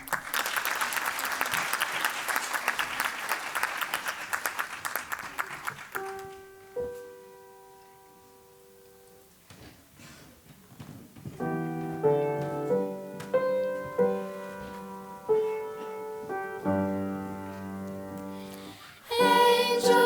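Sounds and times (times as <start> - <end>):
audience applauding: 0.0 - 6.4
piano notes ringing: 6.2 - 9.3, 11.4 - 20.0.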